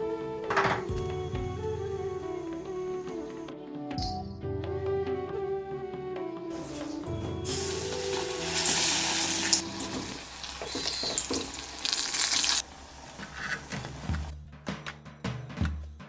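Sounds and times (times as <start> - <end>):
food sizzling in hot oil: 6.6 - 14.3.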